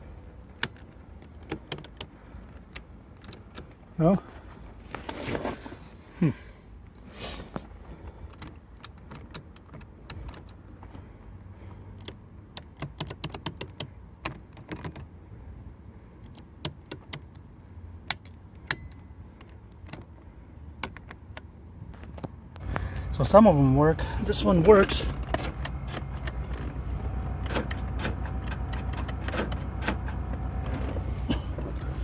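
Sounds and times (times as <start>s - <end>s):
low steady hum: 22.6s - 32.0s.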